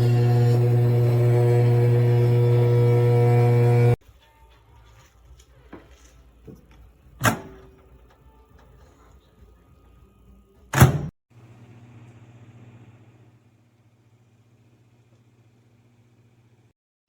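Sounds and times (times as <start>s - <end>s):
microwave oven humming: 0.0s - 4.0s, 11.4s - 16.7s.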